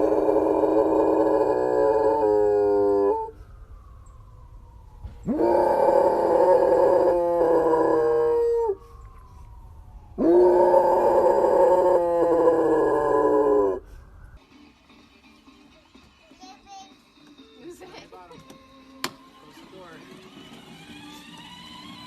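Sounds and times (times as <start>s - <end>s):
dog howling: 0.0s - 3.4s, 5.2s - 8.9s, 10.2s - 13.9s.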